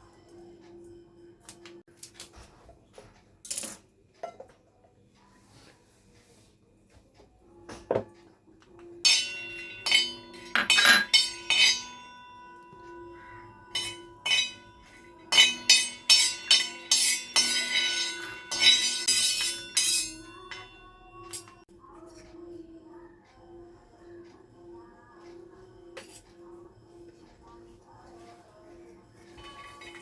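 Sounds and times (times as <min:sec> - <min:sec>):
kitchen utensils clinking: 0:02.4 - 0:04.5, 0:09.1 - 0:12.2, 0:13.8 - 0:21.6, 0:29.2 - 0:30.0.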